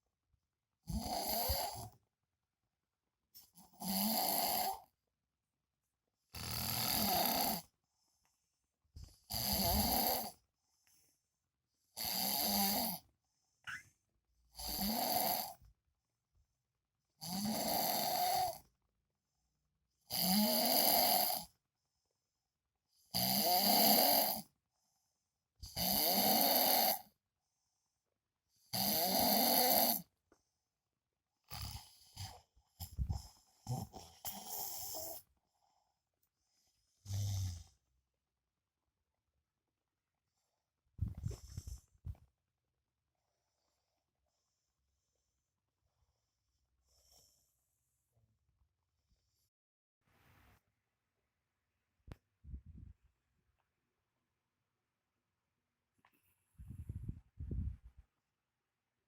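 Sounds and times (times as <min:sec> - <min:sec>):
man snoring: 0:00.9 - 0:01.9, 0:03.8 - 0:04.8, 0:06.4 - 0:07.7, 0:09.3 - 0:10.4, 0:12.0 - 0:13.0, 0:14.6 - 0:15.6, 0:17.2 - 0:18.6, 0:20.1 - 0:21.5, 0:23.1 - 0:24.4, 0:25.7 - 0:27.1, 0:28.7 - 0:30.0, 0:37.1 - 0:37.7.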